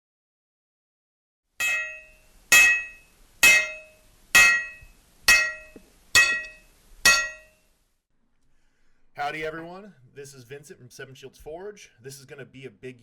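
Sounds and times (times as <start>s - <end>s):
hammer blows on an anvil: 1.6s - 7.6s.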